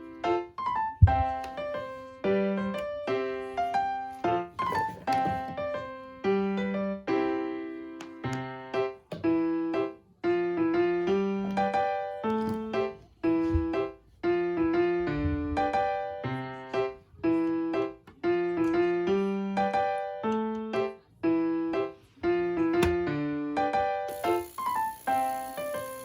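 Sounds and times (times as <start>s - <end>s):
electric piano tune: 0.0s - 26.0s.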